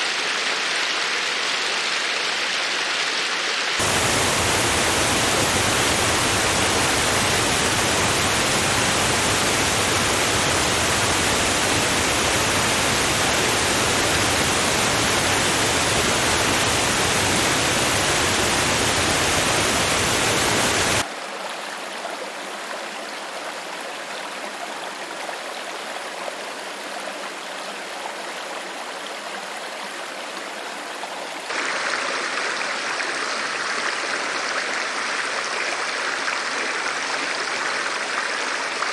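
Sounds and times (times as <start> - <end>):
water rushing: 0.0 - 21.0, 31.5 - 38.9
brook flowing: 0.0 - 38.9.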